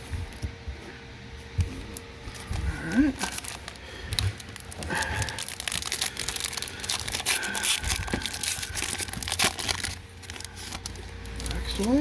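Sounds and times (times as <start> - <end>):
foil wrapper crinkling: 2.5 - 12.0.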